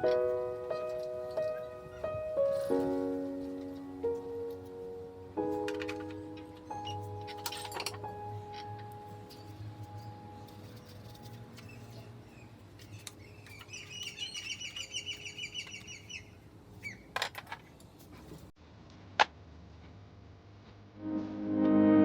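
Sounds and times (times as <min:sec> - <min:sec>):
bird chirping trill: 0:09.4 - 0:17.1.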